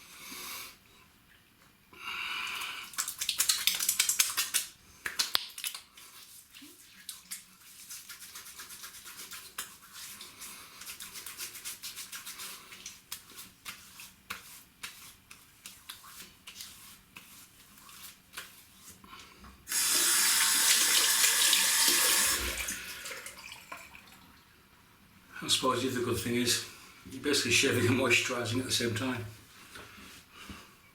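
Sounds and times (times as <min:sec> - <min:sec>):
water tap running: 0:19.7 - 0:24.2.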